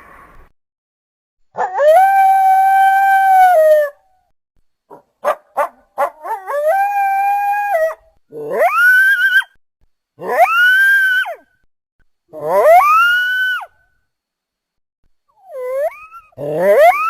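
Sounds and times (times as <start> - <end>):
low-pitched coyote howls: 1.6 - 4.1, 6.1 - 9.6, 10.2 - 11.5, 12.3 - 13.7, 15.4 - 17.0
coyote yips: 15.5 - 17.0.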